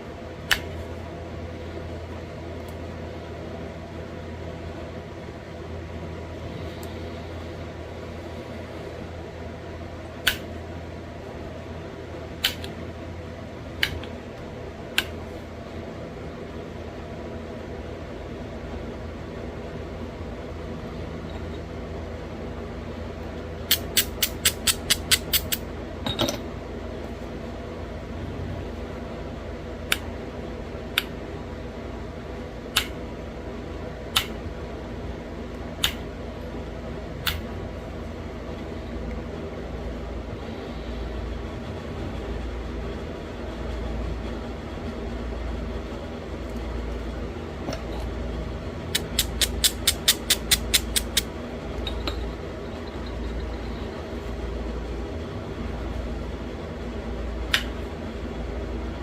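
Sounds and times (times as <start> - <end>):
steady low hum: 0.0 - 59.0.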